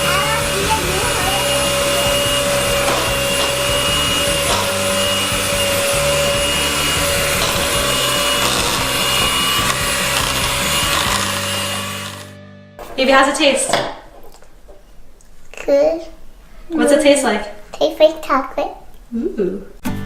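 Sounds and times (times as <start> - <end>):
electric blender whining: 0.0 - 12.4.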